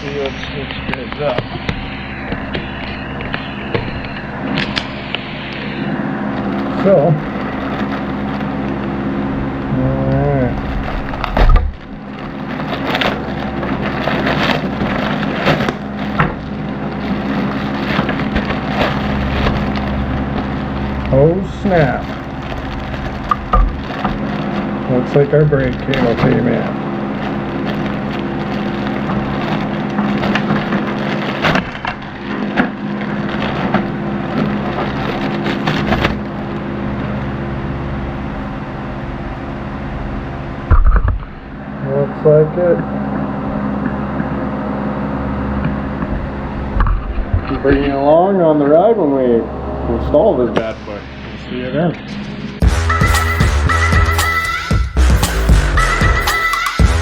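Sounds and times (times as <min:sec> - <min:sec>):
steady low hum: 0:00.0 - 0:54.2
packaging crackling and rustling: 0:10.6 - 0:21.1, 0:21.7 - 0:24.8, 0:25.6 - 0:36.2.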